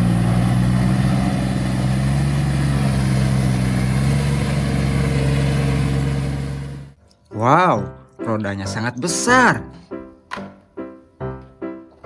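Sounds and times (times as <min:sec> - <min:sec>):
tractor engine idling: 0:00.0 - 0:07.0.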